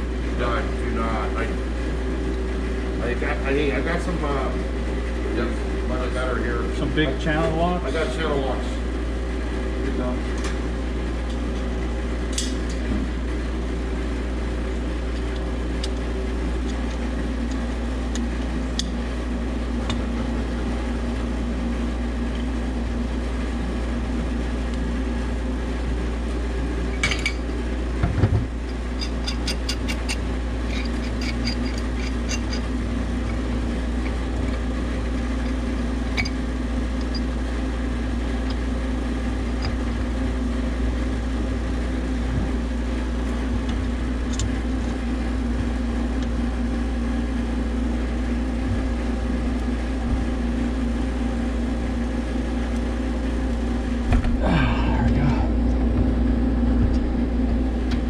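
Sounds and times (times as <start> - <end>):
machine hum: 0.0 - 58.0
hand tools clinking on pipework: 29.0 - 32.7.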